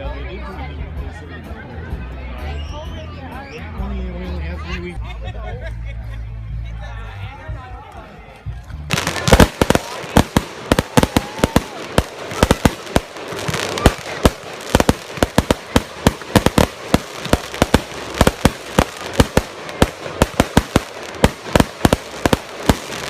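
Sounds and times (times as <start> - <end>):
firecrackers banging: 8.9 - 23.0.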